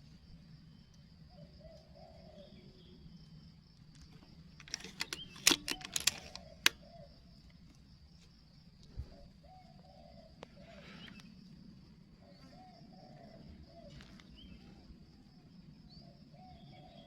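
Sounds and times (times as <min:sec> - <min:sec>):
faint insect hum: 0:00.0 - 0:17.0
dove cooing: 0:01.3 - 0:02.6, 0:04.7 - 0:07.1, 0:09.0 - 0:11.2, 0:12.2 - 0:14.8, 0:16.3 - 0:17.0
sharp clicks and taps: 0:04.6 - 0:06.8.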